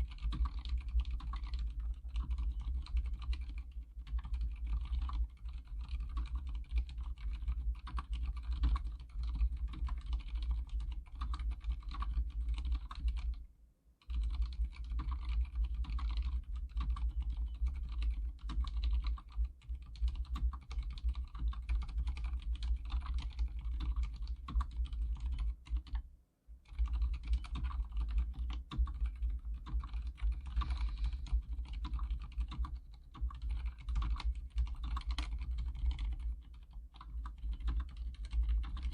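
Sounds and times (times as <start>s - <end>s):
fast typing on keyboard: 0.0s - 13.4s, 14.0s - 38.9s.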